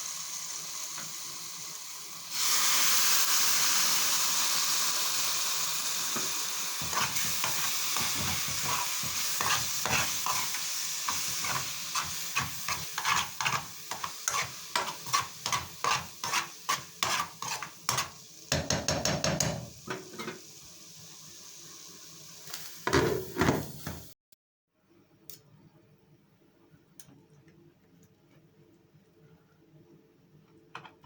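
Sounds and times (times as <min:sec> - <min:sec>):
food sizzling in frying pan: 0:00.0 - 0:24.2
utensil scraping and knocking pan: 0:06.8 - 0:18.1.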